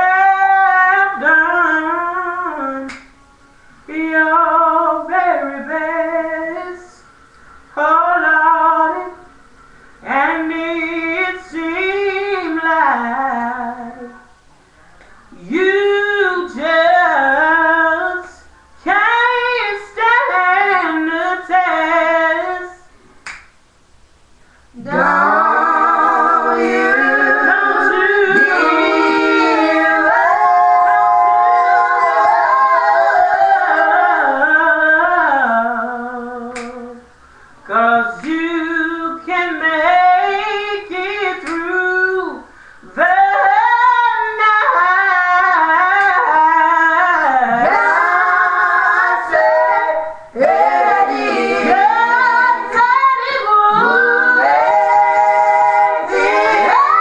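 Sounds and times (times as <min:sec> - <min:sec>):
woman singing gospel solo: 0:00.0 - 0:09.4, 0:10.0 - 0:14.4, 0:15.2 - 0:23.0, 0:24.7 - 0:57.0
breaths: 0:07.1 - 0:07.7, 0:09.4 - 0:10.0, 0:14.6 - 0:15.4, 0:24.3 - 0:24.8, 0:37.1 - 0:37.7, 0:42.4 - 0:43.0.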